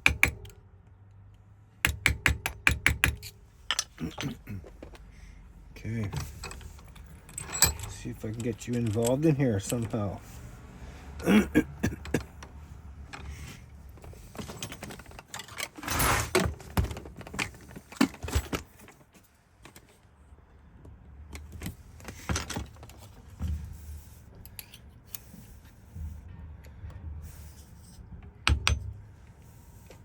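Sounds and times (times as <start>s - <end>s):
metal lock clicks and taps: 0.0s - 0.6s, 28.4s - 28.9s
scraping metal rattle: 5.9s - 10.2s, 14.1s - 16.7s.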